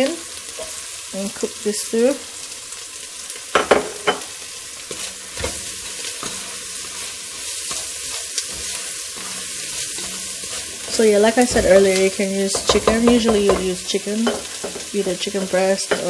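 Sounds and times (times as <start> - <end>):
bacon sizzling in a pan: 0.0 - 16.0
utensil knocking against pan: 11.5 - 15.2.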